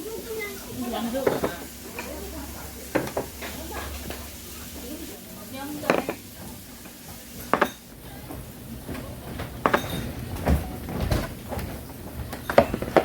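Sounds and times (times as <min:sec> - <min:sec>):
kitchenware knocks and clanks: 0:01.0 - 0:04.3, 0:05.7 - 0:13.0.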